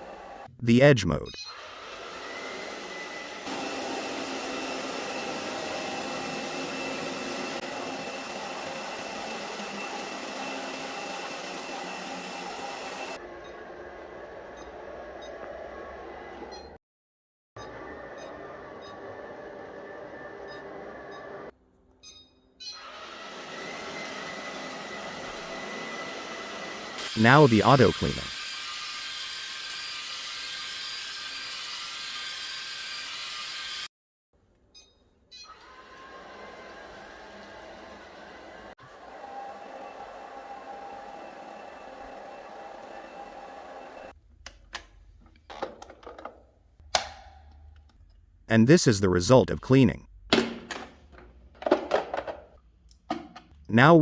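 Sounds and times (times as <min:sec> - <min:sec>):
robot vacuum whirring: 0:01.5 - 0:16.5, 0:22.8 - 0:33.9, 0:35.5 - 0:44.2.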